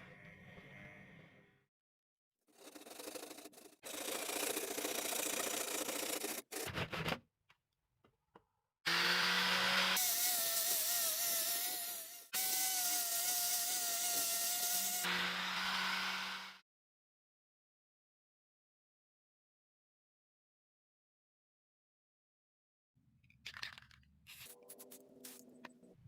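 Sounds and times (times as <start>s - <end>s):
tool scraping spinning wood: 2.5s - 7.0s.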